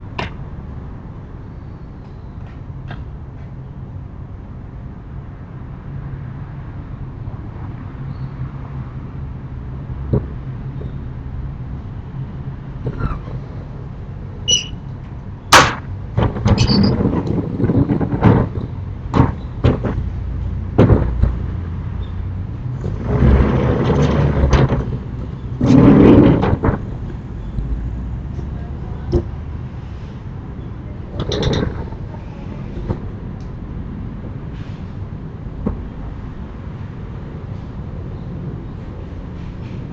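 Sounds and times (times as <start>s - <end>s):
shutters rumbling along rails: 0.0s - 39.9s
storm shutter banging: 15.5s - 27.4s, 31.0s - 33.3s.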